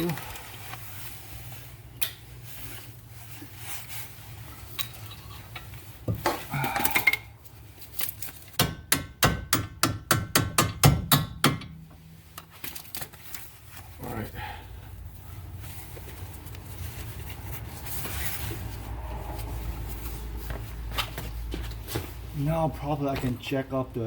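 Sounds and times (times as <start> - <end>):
hammer striking metal punch: 8.6 - 12.2.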